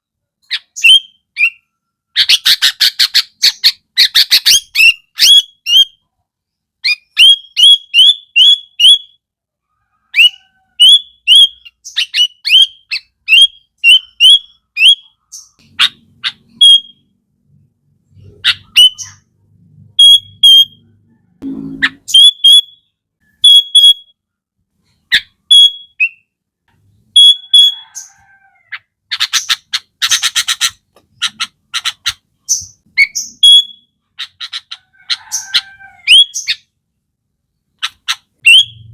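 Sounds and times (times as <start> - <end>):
bird whistled song: 0.5 - 6.0, 6.8 - 9.2, 10.2 - 17.1, 18.2 - 19.2, 20.0 - 20.8, 21.4 - 24.2, 25.1 - 26.3, 27.2 - 28.1, 32.5 - 33.9, 38.4 - 38.9
bird chattering: 10.2 - 17.1, 18.1 - 19.3, 27.1 - 36.7, 37.8 - 38.9.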